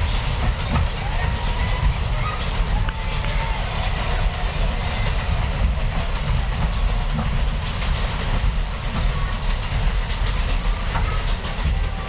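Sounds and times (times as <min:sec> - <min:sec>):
subway train rumble: 0:00.0 - 0:12.0.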